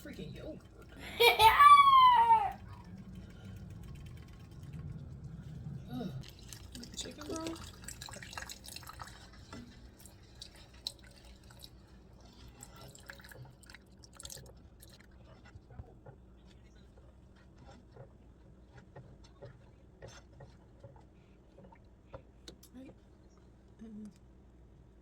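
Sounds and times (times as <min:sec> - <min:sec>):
sauce cooking in a skillet: 0:06.2 - 0:15.6.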